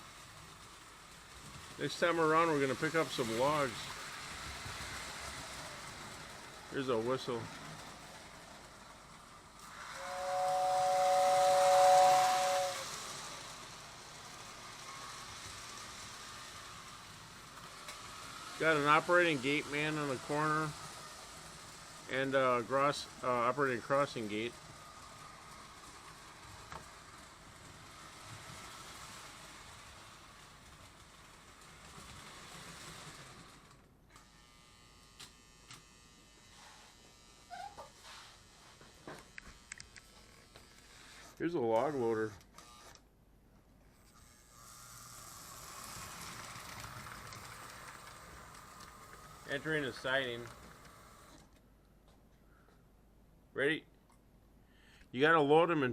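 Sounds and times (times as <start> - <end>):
fan motor hiss: 0.0 - 43.0, 44.0 - 51.6
toy train whistle two-note chord: 9.9 - 13.0
short squeak: 37.5 - 37.9.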